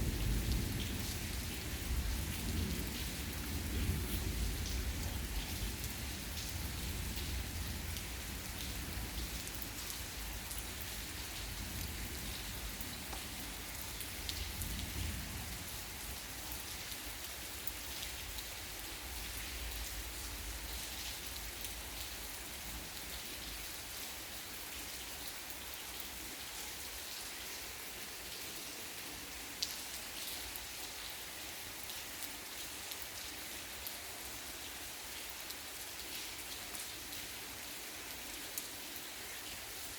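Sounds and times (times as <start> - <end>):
raindrops ticking on a surface: 0.0 - 39.9
steady rain falling: 0.0 - 39.9.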